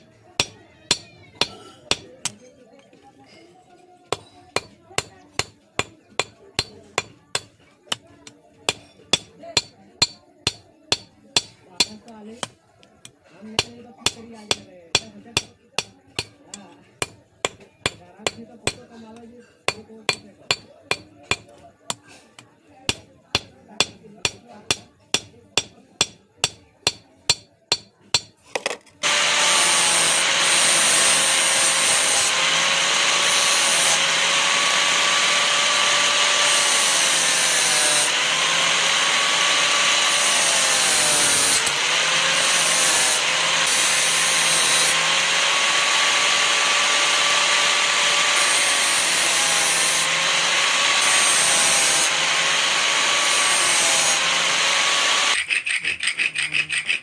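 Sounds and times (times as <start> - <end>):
electric grinder on steel: 29.0 - 55.4.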